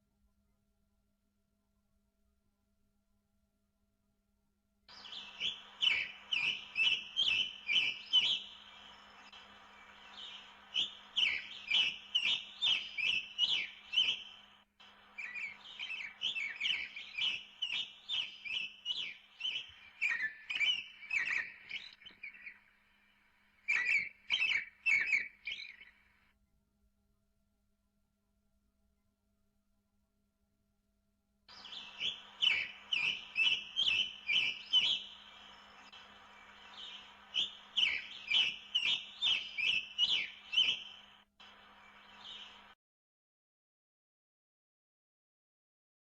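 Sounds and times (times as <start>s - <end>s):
songbird chirping: 4.9s - 26.2s, 31.5s - 42.8s.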